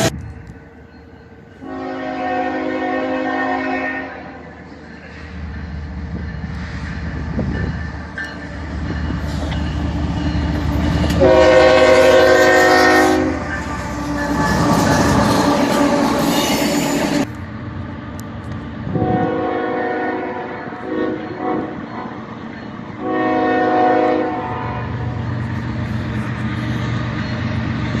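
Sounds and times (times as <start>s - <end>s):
train rumble and wheel clatter: 0.0s - 28.0s
locomotive air horn chord: 1.6s - 4.4s, 11.1s - 17.3s, 18.9s - 22.1s, 23.0s - 25.2s.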